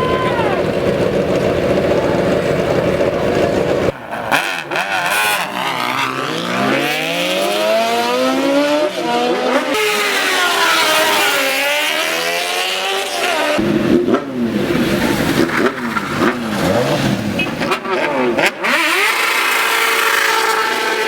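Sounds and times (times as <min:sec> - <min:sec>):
low engine rumble: 0:00.0 - 0:04.0
motorcycle engine revving and accelerating: 0:00.5 - 0:21.0.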